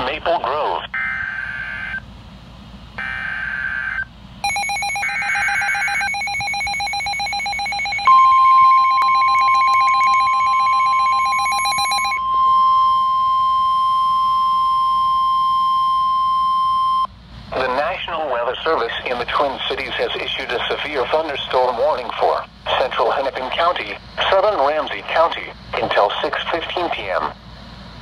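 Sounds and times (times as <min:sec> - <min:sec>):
steady warning alarm tone: 0:00.9 - 0:02.0, 0:03.0 - 0:17.1
rapidly pulsing alarm tone: 0:01.0 - 0:02.1, 0:03.0 - 0:17.1.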